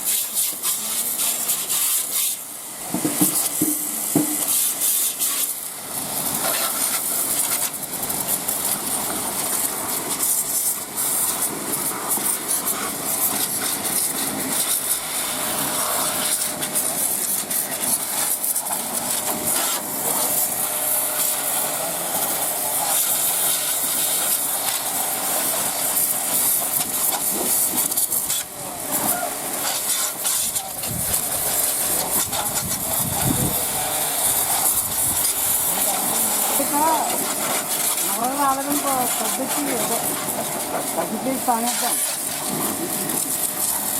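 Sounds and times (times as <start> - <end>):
pressure washer spraying: 0.0 - 43.9.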